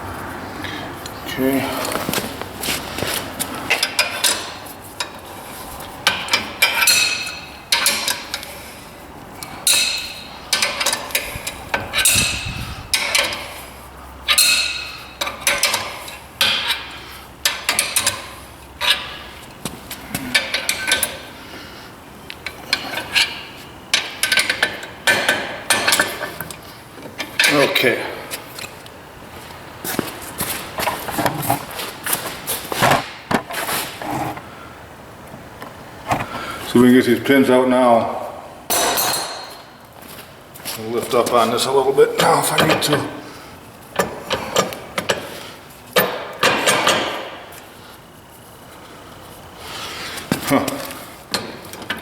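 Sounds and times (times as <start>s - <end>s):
wrench clinking against steel: 6.0s - 8.6s, 9.6s - 13.6s, 14.3s - 19.3s, 22.4s - 26.6s.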